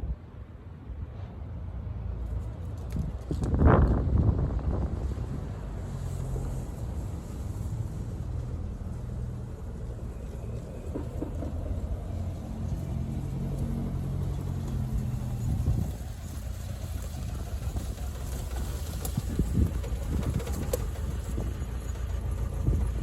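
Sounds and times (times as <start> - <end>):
wind rumbling on microphone: 0.0 - 23.0
car engine running: 15.4 - 23.0.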